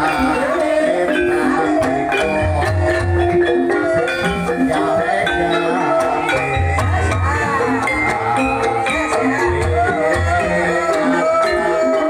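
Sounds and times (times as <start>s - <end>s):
bamboo xylophones playing: 0.0s - 12.0s.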